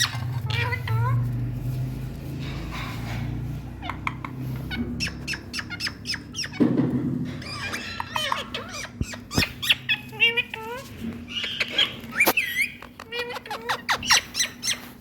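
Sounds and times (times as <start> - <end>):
parakeets calling: 0.0 - 1.3, 2.4 - 15.0.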